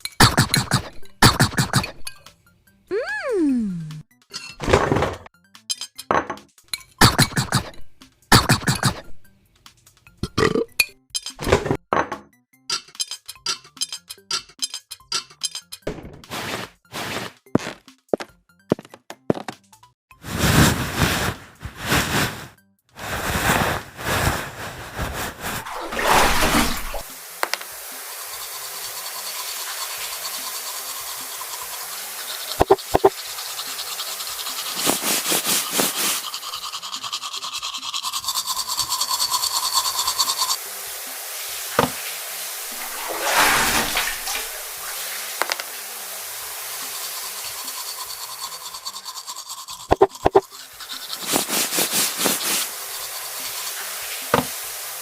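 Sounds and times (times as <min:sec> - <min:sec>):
paper and packaging rustling: 0:34.8 - 0:36.2, 0:50.9 - 0:52.7.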